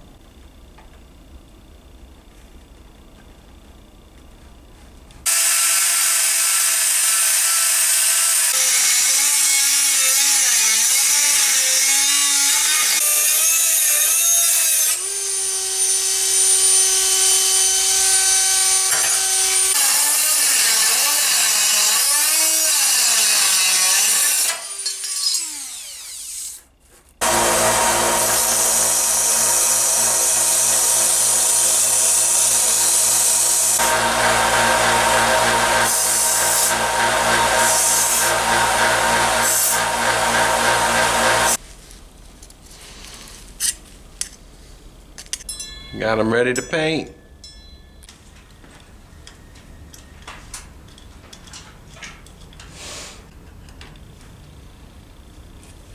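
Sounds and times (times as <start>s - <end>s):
power tool cutting metal: 5.3s - 26.6s, 27.2s - 41.6s.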